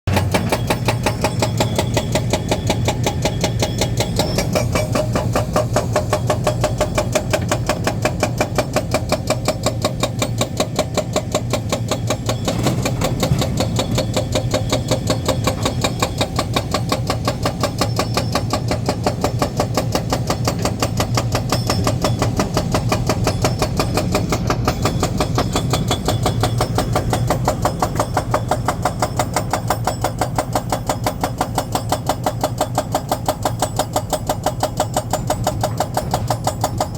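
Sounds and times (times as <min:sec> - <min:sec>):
heavy diesel engine running: 0:00.1 - 0:36.9.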